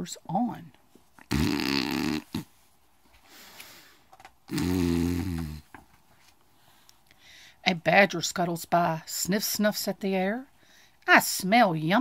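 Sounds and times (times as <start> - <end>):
woman imitating snoring: 1.3 - 2.5, 4.5 - 5.6
soft breath: 3.1 - 4.1, 6.2 - 7.6, 10.6 - 11.0.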